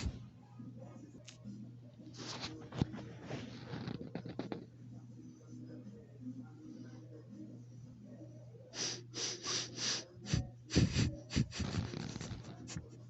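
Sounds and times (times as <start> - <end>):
puppy sniffing: 8.8 - 13.0.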